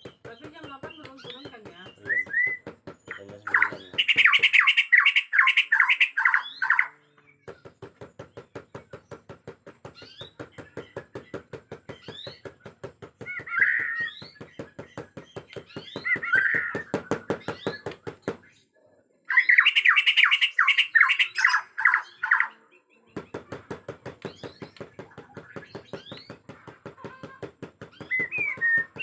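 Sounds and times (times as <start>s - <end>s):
bird ticking chatter: 0.0s - 6.9s, 19.3s - 22.6s
bird singing whistled notes: 0.8s - 6.9s, 28.0s - 29.0s.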